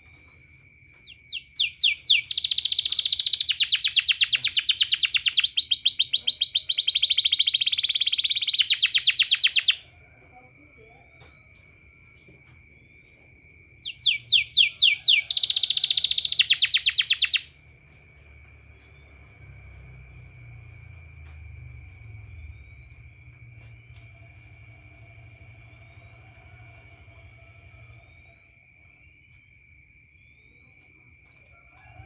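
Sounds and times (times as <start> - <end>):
canary singing: 1.0 - 9.9, 12.8 - 17.5, 30.2 - 32.0.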